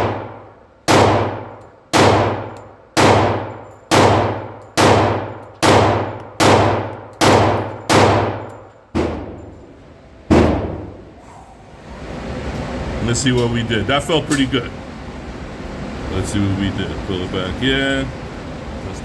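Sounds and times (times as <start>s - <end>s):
pistol shots echoing: 0.0s - 9.6s.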